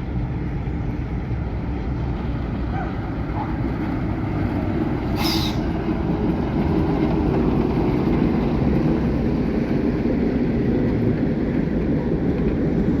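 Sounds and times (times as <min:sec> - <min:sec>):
steam train rumbling: 0:00.0 - 0:13.0.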